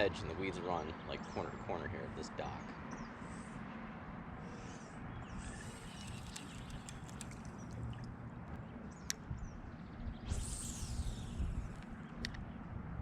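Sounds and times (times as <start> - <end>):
brief swish: 10.2 - 11.9.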